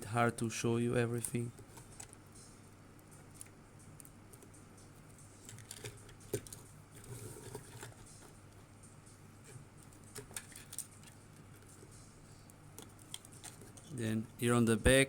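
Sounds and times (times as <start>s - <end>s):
plastic parts clicking: 12.8s - 13.9s.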